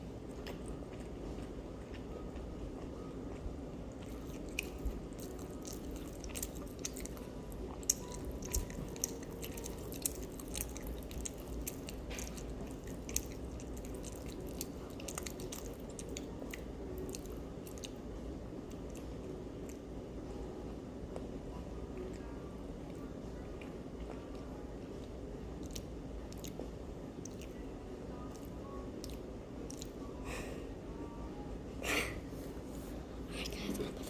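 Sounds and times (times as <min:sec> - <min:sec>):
steady low hum: 0:00.0 - 0:34.0
crunching fried egg roll: 0:04.0 - 0:16.2.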